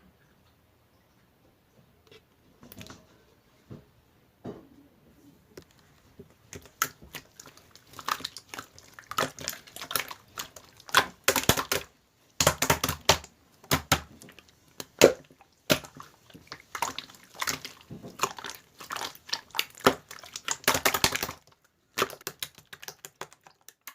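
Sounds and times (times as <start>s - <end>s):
slime squishing and crackling: 6.4s - 23.9s.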